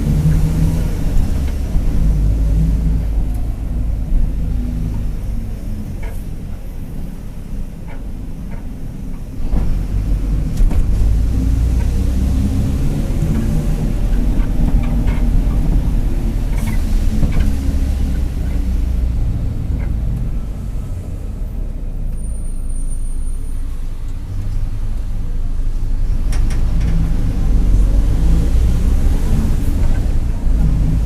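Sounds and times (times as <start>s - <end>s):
rear differential growl: 0.0s - 21.5s
bus diesel engine running: 0.0s - 31.0s.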